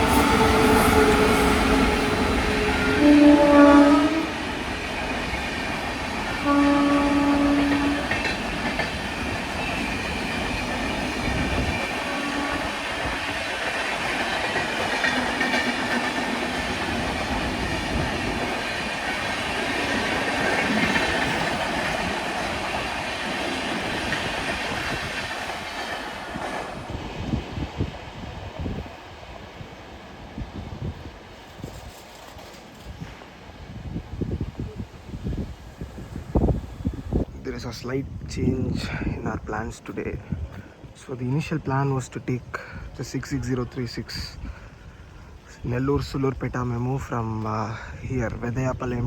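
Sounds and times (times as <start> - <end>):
train horn blasts: 0.0 - 4.8, 6.3 - 8.4, 11.8 - 13.2
train wheels clattering on rails: 0.0 - 27.5.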